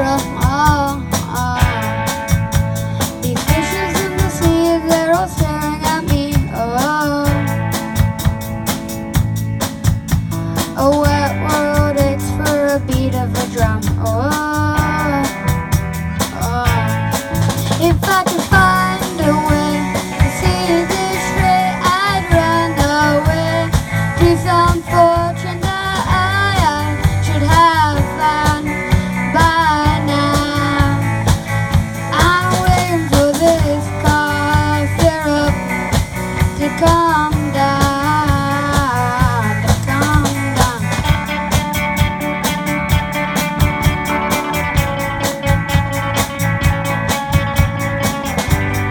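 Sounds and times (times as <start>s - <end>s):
person singing: 0.0s - 7.7s, 10.4s - 41.5s
busy drumming: 0.0s - 48.9s
rock band playing: 0.0s - 48.9s.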